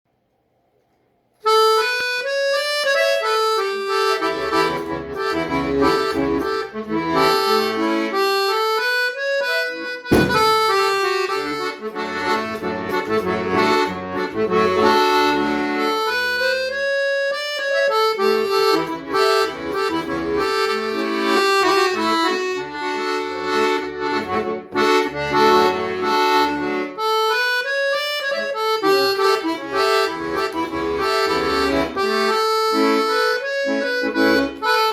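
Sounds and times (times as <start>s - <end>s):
solo instrumental music: 1.4s - 34.9s.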